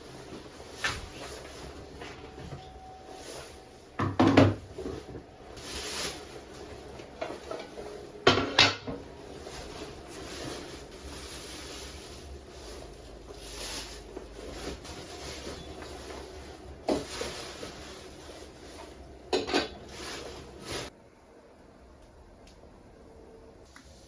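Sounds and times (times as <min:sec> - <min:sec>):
objects knocking and clattering: 0:04.0 - 0:05.2, 0:07.2 - 0:09.1, 0:19.3 - 0:20.2.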